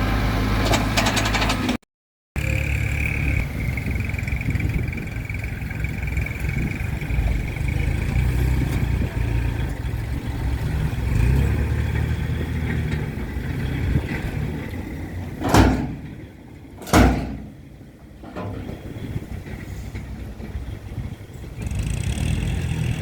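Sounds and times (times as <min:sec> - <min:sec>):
heavy machine engine rumbling: 0:00.0 - 0:01.8, 0:02.4 - 0:23.0
loud bangs: 0:15.3 - 0:19.0.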